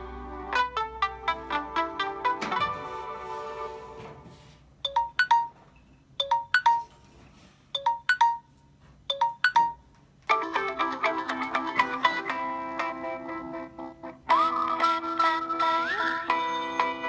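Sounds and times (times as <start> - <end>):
fuller phone ringtone: 4.8 - 5.6, 6.2 - 7.1, 7.8 - 12.4
phone ringtone of high notes: 4.9 - 5.6, 6.2 - 7.0, 7.8 - 8.5, 9.1 - 9.8.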